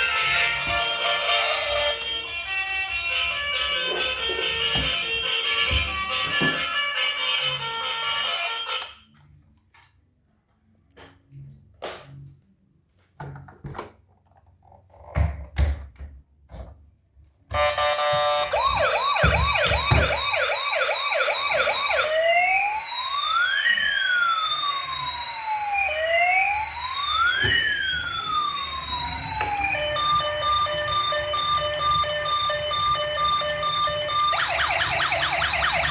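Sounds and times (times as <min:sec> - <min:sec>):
toy siren yelping and wailing: 0:17.6 - 0:35.9.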